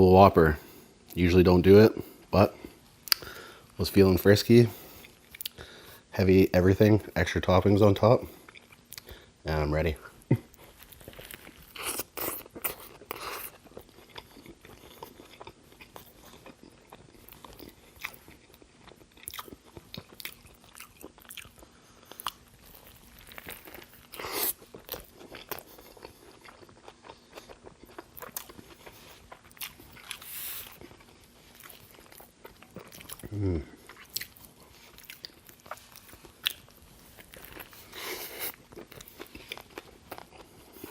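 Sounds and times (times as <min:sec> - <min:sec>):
close biting and chewing: 0:10.5 - 0:40.9.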